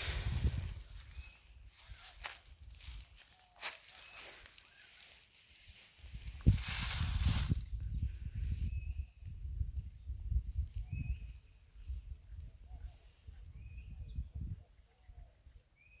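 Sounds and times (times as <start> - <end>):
crickets trilling: 0.0 - 16.0.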